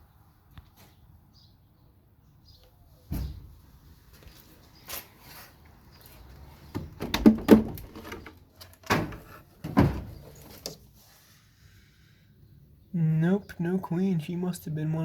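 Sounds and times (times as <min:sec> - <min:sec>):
wooden hive parts knocking: 0:06.7 - 0:10.2.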